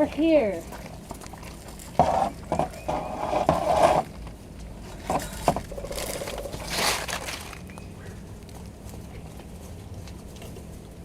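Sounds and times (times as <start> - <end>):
scrape: 2.9 - 4.1.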